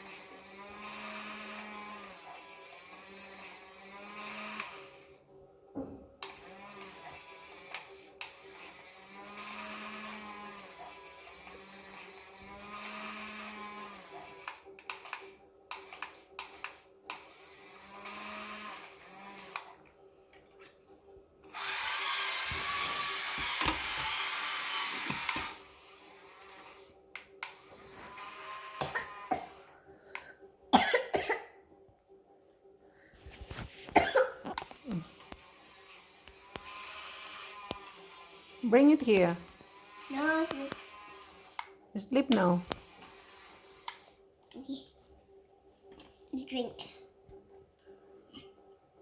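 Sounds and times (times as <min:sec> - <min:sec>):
small electric motor whirring: 0:00.0 - 0:05.2, 0:06.2 - 0:19.8, 0:21.5 - 0:29.7, 0:34.5 - 0:44.7.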